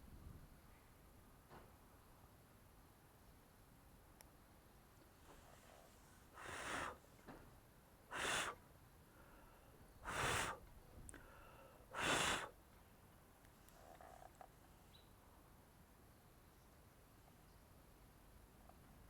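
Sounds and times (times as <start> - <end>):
person blowing hard: 6.4 - 7.0, 8.1 - 8.6, 10.0 - 10.6, 12.0 - 12.5.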